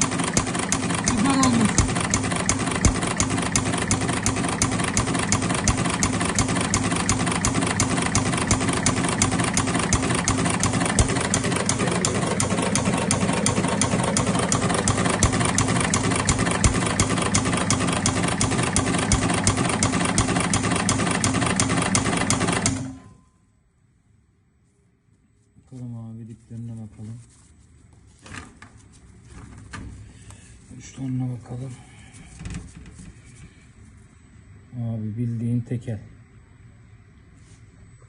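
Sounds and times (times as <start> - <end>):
engine idling: 0.0 - 23.0.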